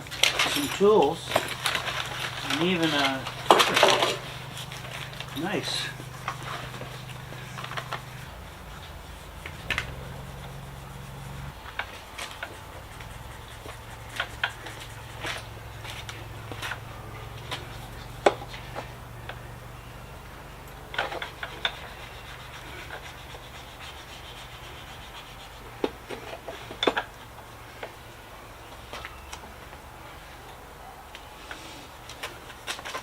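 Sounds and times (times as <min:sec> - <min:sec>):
tools and parts clicking and knocking: 0:00.0 - 0:05.4, 0:25.8 - 0:27.2
steady low hum: 0:00.0 - 0:32.9.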